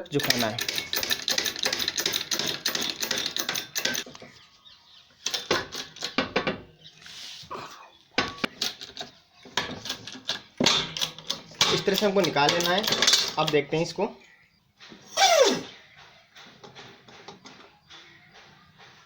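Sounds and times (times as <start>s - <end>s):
metal clicking and clattering: 0.0s - 4.3s, 5.2s - 6.6s, 8.2s - 13.9s.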